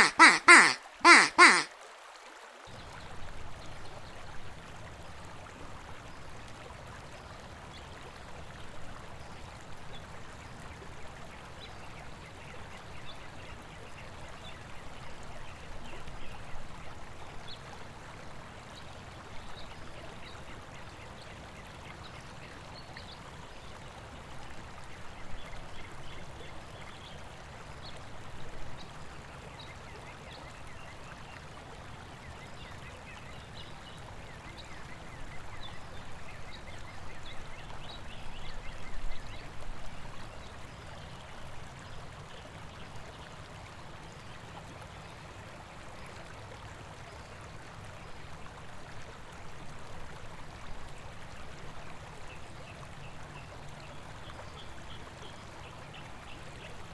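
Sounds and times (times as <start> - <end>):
birds giving short high calls: 0.0 - 1.7
running water rushing: 0.0 - 29.9.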